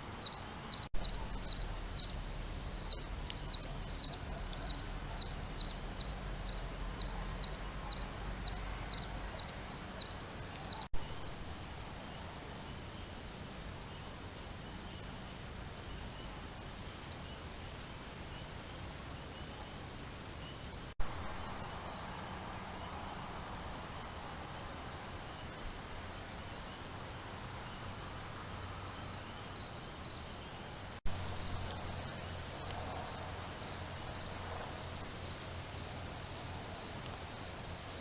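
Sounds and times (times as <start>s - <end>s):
crickets chirping: 0.0s - 30.6s, 31.2s - 38.0s
lower-pitched insect chirping: 0.2s - 15.4s.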